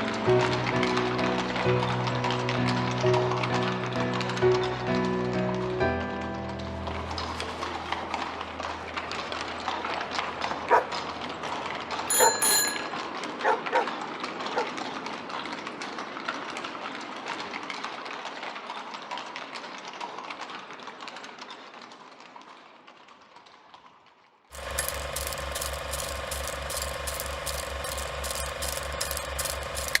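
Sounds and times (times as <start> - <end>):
steady mechanical clatter: 0.0 - 22.3, 24.5 - 30.0
clicking street noise: 0.0 - 30.0
constant hum: 24.5 - 30.0.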